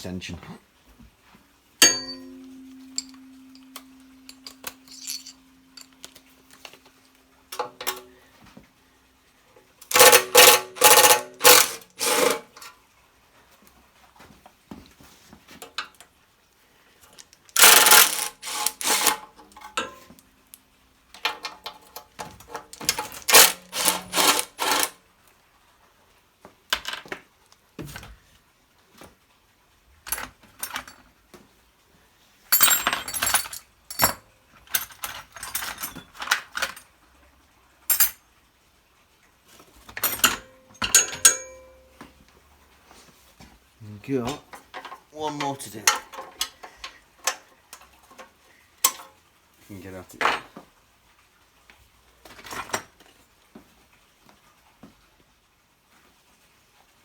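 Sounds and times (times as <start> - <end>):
metal clinks and knocks: 1.8 - 8.1, 9.9 - 12.7, 17.6 - 20.1, 21.2 - 24.9, 32.6 - 36.8, 40.0 - 42.0
ratchet wrench clicking: 17.6 - 19.1.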